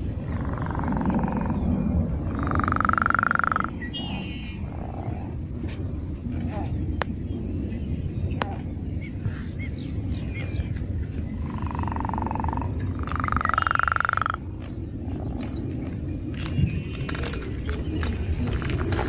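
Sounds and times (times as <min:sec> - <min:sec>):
low steady rumble: 0:00.0 - 0:19.0
frog trilling calls: 0:00.1 - 0:05.5, 0:11.3 - 0:18.1.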